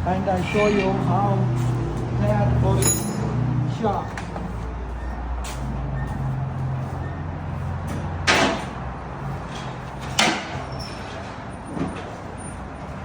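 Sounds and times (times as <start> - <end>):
sharp metal clanks: 2.8 - 3.4.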